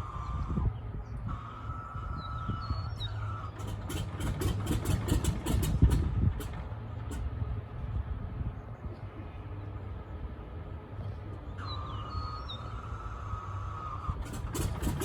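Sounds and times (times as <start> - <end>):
starter whine: 0.0 - 7.9, 11.2 - 15.0
engine clicks and pops: 2.9 - 7.5, 13.9 - 15.0.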